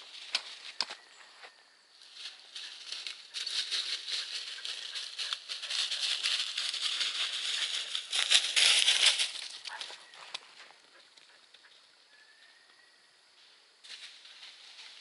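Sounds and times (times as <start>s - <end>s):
dry leaves crunching underfoot: 0.0s - 10.7s.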